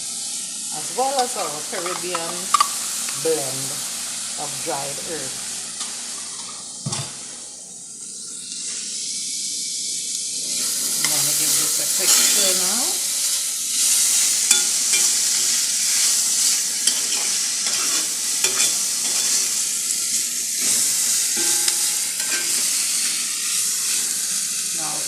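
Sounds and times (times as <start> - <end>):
vegetables sizzling in pan: 0.0 - 25.0
utensil scraping pan: 12.0 - 12.6, 16.8 - 19.7, 20.6 - 23.2.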